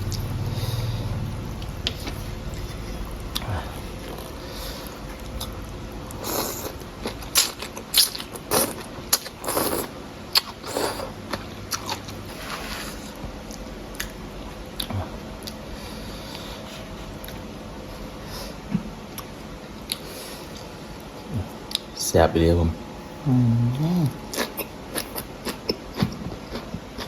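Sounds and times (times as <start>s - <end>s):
chewing sounds: 0.0s - 14.2s, 24.3s - 27.0s.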